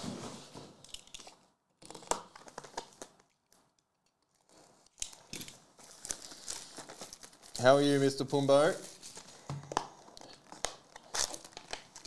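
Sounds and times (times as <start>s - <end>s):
plastic packaging crinkling and tearing: 0.8s - 3.6s, 4.2s - 12.0s.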